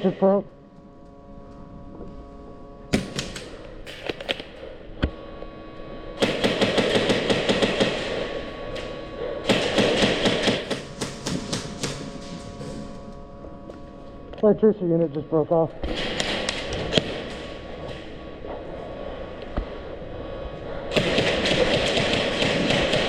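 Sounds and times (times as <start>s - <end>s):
airsoft gun shots: 2.9s - 4.5s, 6.2s - 8.1s, 9.4s - 12.0s, 15.8s - 18.0s, 20.9s - 23.0s
airsoft gun full-auto bursts: 6.2s - 8.2s, 9.4s - 11.9s, 15.9s - 17.2s, 20.9s - 23.0s.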